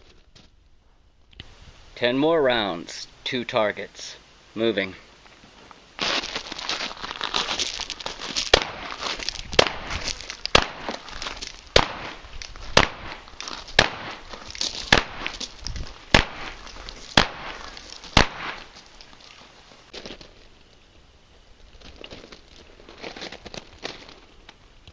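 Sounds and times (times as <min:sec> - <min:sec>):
crackling rustle: 0:00.0 - 0:24.9
shotgun shots: 0:08.5 - 0:11.0, 0:11.7 - 0:13.2, 0:13.8 - 0:14.3, 0:14.9 - 0:15.4, 0:16.1 - 0:18.7.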